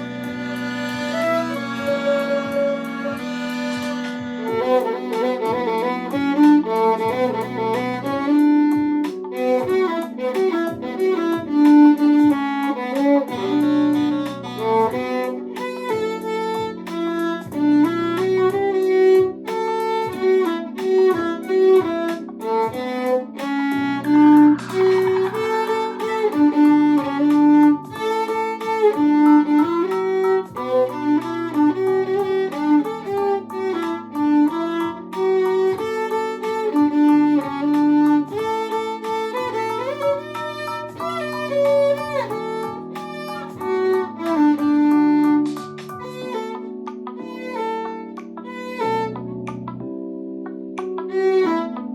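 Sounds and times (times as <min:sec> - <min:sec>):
backing track with beat: 0:00.0 - 0:49.8, 0:50.4 - 0:51.9
violin melody: 0:00.0 - 0:51.9.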